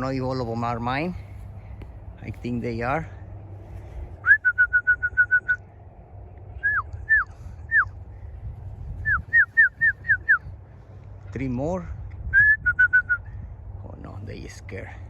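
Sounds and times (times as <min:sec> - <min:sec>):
person whistling: 0:04.2 - 0:05.6, 0:06.6 - 0:07.9, 0:09.0 - 0:10.4, 0:12.4 - 0:13.2.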